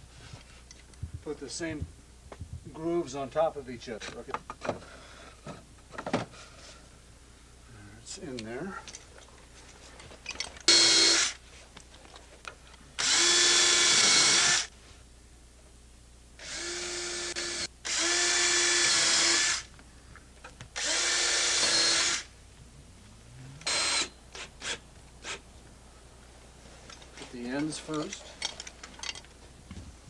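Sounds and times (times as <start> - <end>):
power drill bursts: 10.7 - 11.4, 13.0 - 14.7, 16.4 - 19.7, 20.8 - 22.3, 23.6 - 25.4.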